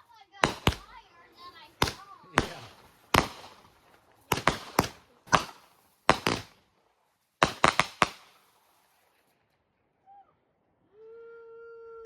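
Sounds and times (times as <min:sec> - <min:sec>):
fireworks bangs: 0:00.0 - 0:09.4.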